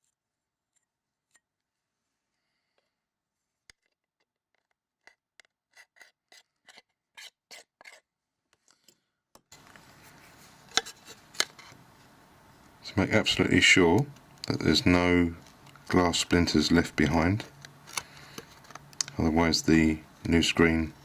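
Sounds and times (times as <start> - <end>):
small tool scraping: 3.6 - 9.0, 9.9 - 11.8.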